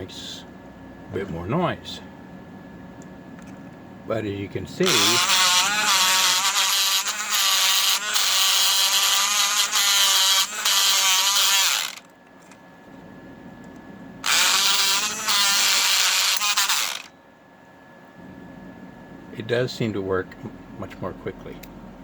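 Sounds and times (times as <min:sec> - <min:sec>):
electric lock pick gun buzzing: 0:04.8 - 0:12.1, 0:14.2 - 0:17.1.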